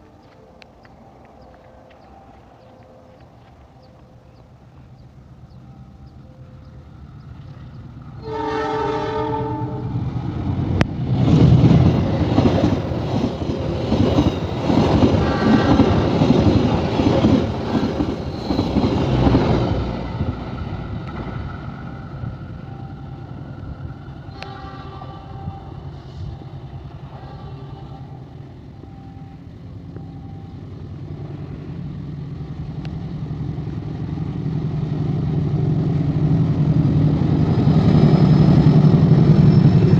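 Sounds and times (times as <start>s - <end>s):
locomotive engine roar: 0.0s - 39.9s
locomotive horn blast: 8.2s - 10.0s, 15.1s - 16.0s, 24.2s - 28.4s
train wheel clatter: 10.8s - 21.6s.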